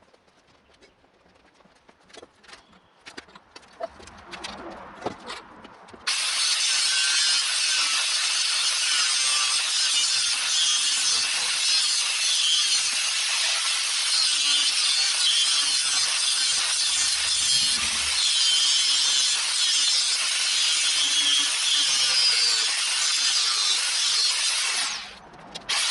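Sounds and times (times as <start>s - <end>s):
power tool cutting: 6.1s - 25.9s.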